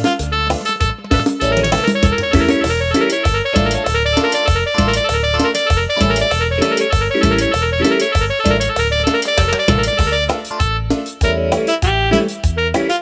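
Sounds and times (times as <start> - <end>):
heavy pulsing bass line: 0.0 - 12.8
keyboard: 0.0 - 13.0
percussion beat: 0.0 - 13.0.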